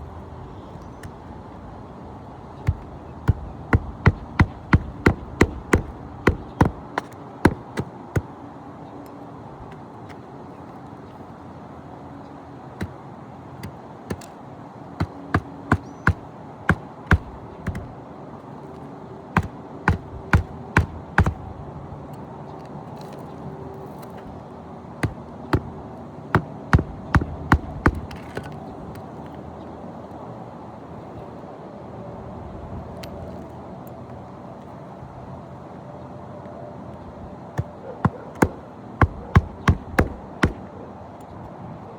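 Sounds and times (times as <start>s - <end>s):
hammer striking nails: 2.6s - 8.3s, 13.6s - 14.3s, 15.0s - 17.9s, 19.4s - 21.5s, 25.0s - 25.8s, 26.4s - 28.5s, 37.6s - 40.7s.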